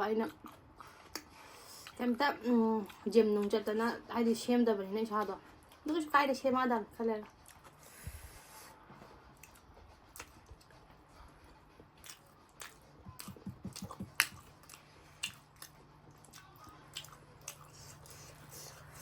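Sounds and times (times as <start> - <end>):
chewing and biting food: 2.8 - 3.6, 7.2 - 8.3, 9.3 - 19.0.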